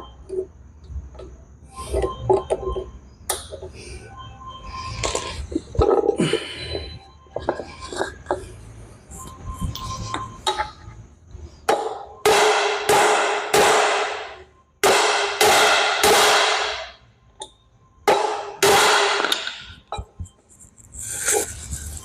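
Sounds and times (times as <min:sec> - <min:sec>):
hammer striking metal: 0:11.7 - 0:17.0, 0:18.1 - 0:19.8.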